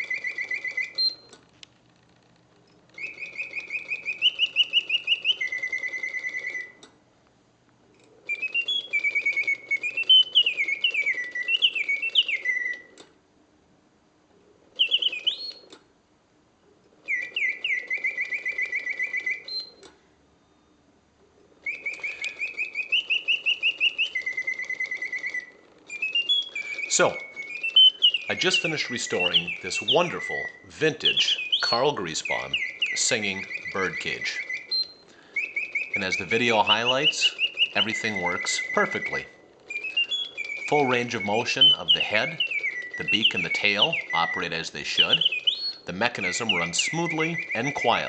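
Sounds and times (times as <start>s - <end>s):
mechanical bird whistle trilling: 0.0s - 1.4s, 3.0s - 6.8s, 8.2s - 13.0s, 14.7s - 15.7s, 17.0s - 19.8s, 21.6s - 48.0s.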